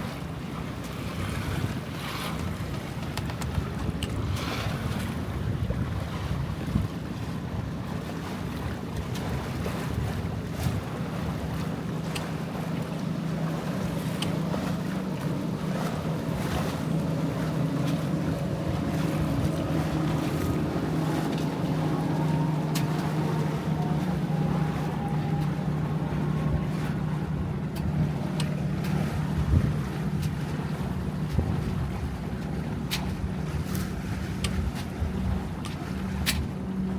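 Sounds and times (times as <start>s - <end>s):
water moving past hull: 0.0s - 36.9s
wind on microphone: 0.9s - 36.9s
low hum: 12.0s - 36.9s.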